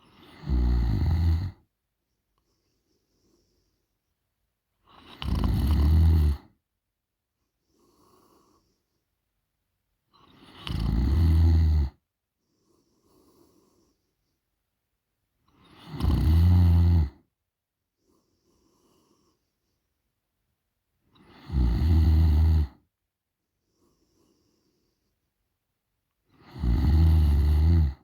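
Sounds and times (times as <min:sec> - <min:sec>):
woman snoring: 0:00.0 - 0:01.6, 0:04.9 - 0:06.5, 0:10.3 - 0:12.0, 0:15.6 - 0:17.2, 0:21.2 - 0:22.8, 0:26.3 - 0:28.0
faint breaths: 0:01.5 - 0:05.2, 0:07.4 - 0:09.4, 0:11.9 - 0:14.7, 0:17.8 - 0:20.2, 0:23.5 - 0:26.8.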